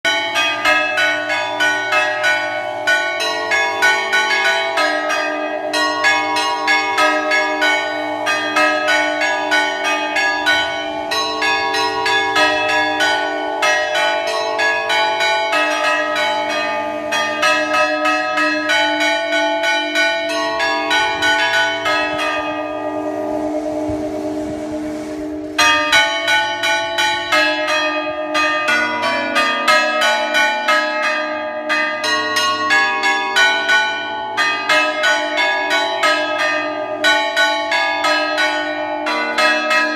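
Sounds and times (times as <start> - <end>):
high bells struck rapidly: 0.1 - 30.8
low bells humming: 0.1 - 37.4.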